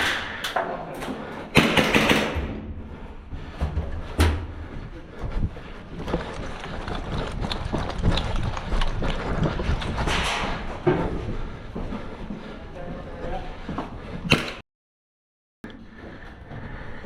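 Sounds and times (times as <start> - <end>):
wind rumble on microphone: 4.0 - 11.4.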